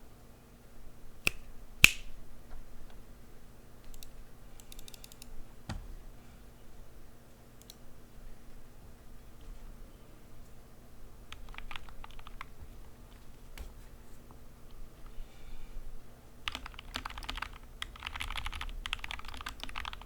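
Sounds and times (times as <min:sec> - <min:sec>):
mechanical keyboard key clacks: 0:16.5 - 0:20.0.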